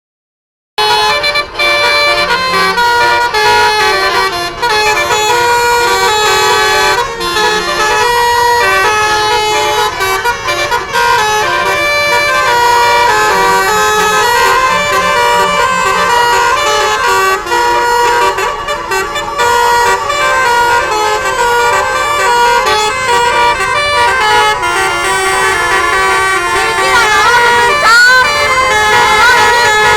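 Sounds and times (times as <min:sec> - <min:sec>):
musical air horns playing melodies: 0:00.8 - 0:29.9.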